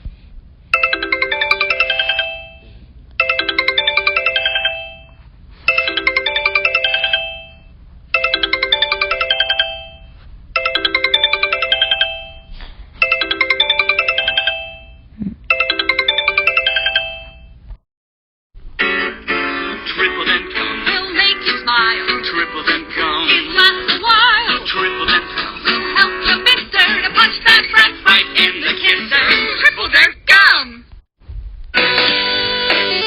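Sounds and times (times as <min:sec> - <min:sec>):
phone ringtone bright notes: 0:00.7 - 0:17.6.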